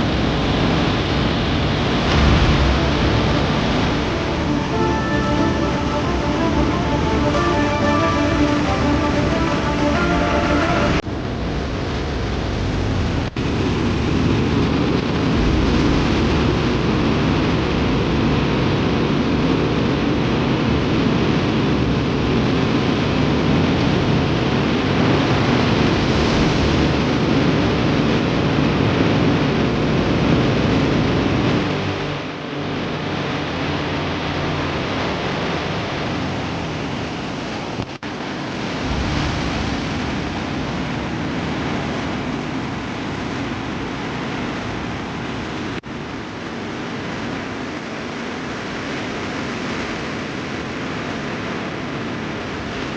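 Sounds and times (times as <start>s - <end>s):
flooded river rushing: 0.6s - 13.1s.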